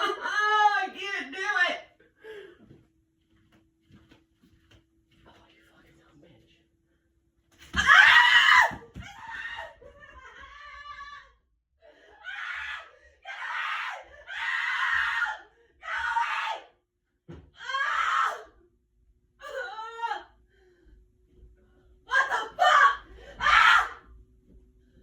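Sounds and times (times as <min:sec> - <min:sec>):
woman screaming: 0:00.0 - 0:00.9, 0:07.7 - 0:11.3, 0:12.2 - 0:16.7, 0:17.6 - 0:18.5, 0:19.4 - 0:20.3, 0:22.1 - 0:24.0.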